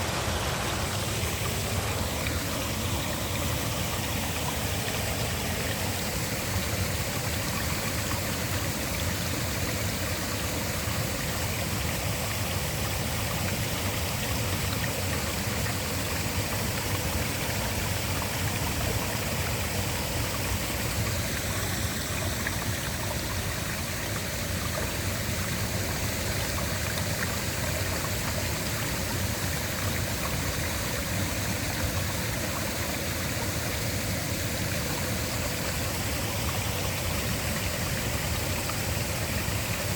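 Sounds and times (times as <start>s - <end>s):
waterfall rushing: 0.0s - 13.6s.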